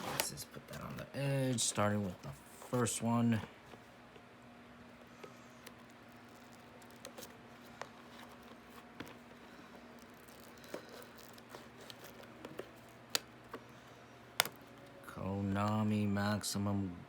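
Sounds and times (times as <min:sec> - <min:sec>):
low electrical hum: 0:00.0 - 0:17.0
cardboard boxes handled: 0:05.3 - 0:13.7.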